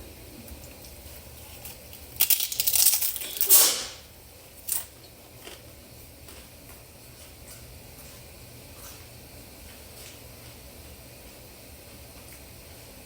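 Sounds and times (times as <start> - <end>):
food packaging crinkling: 1.4 - 4.0.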